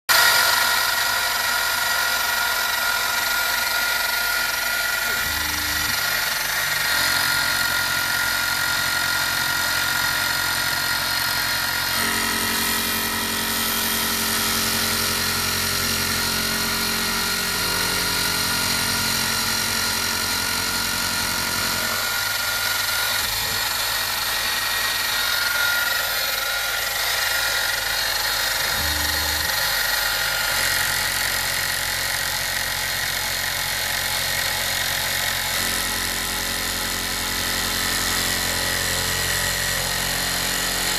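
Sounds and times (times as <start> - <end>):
milling machine spindle whine: 0.1 - 40.9
low motor hum changing pitch: 5.1 - 7.9, 28.6 - 29.9.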